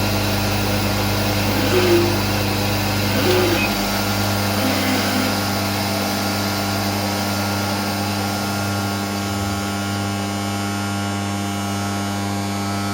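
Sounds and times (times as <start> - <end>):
bandsaw motor humming: 0.0 - 6.9.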